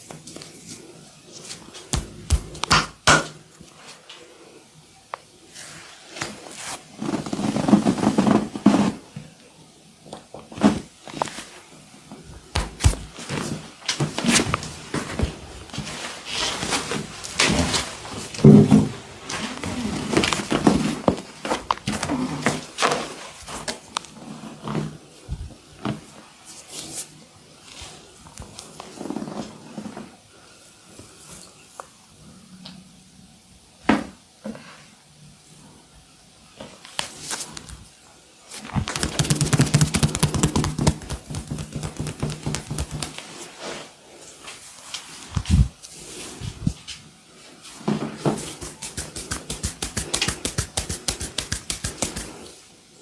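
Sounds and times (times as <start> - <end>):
rapid tapping on skin: 1.9 - 2.9, 12.6 - 13.2, 38.8 - 43.2, 48.6 - 52.5
hand slapping and rubbing skin: 1.9 - 3.3, 12.6 - 13.4, 38.7 - 43.3, 48.4 - 52.5.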